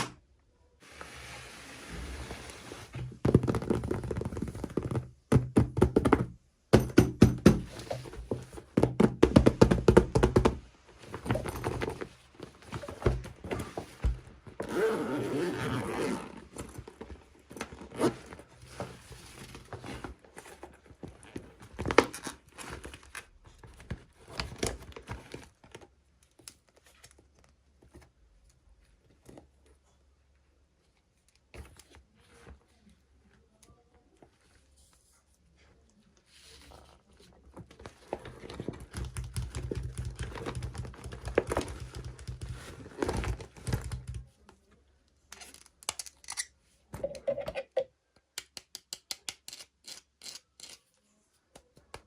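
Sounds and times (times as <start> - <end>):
plastic toys being unboxed: 15.5 - 28.1, 45.2 - 47.8.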